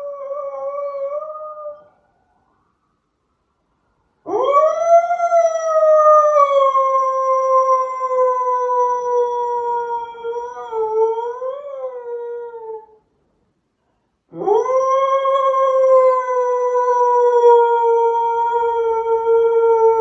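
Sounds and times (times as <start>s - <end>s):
dog howling: 14.3s - 20.0s.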